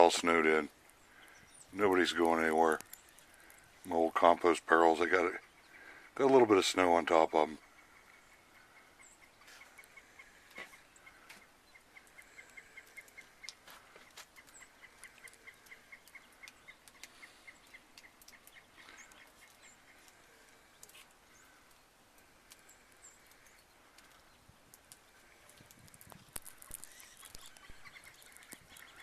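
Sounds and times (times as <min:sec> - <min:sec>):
higher bird chirps: 0:26.6 - 0:29.0.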